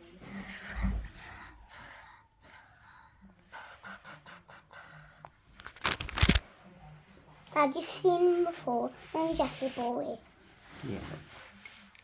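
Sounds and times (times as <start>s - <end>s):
plastic toy pieces clicking: 5.6s - 6.4s.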